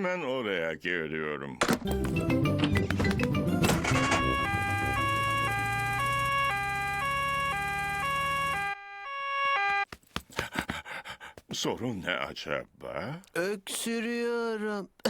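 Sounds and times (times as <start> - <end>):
cartoon two-tone siren: 3.6 - 9.8.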